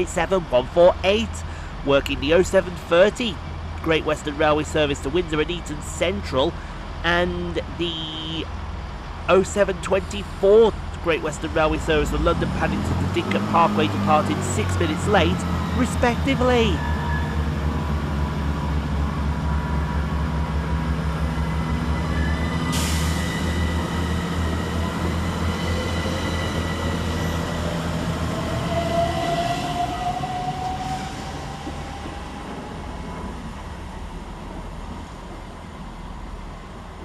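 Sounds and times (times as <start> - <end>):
diesel train engine drone: 0.0 - 37.0
electric train whine: 10.4 - 37.0.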